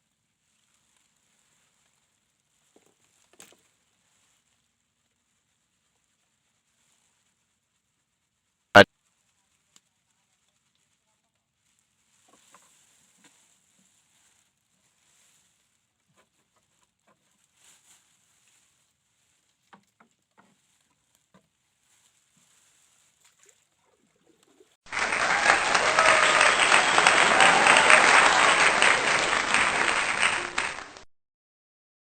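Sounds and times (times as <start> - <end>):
heavy rain: 24.9 - 31.0.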